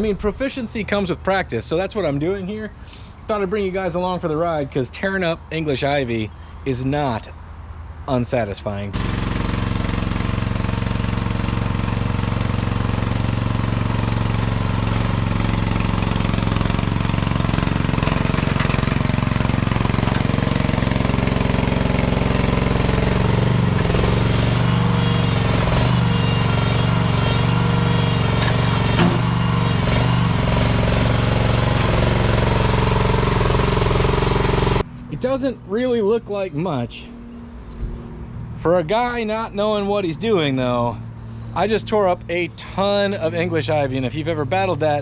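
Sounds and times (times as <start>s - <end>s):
excavator engine running: 8.9s - 35.5s.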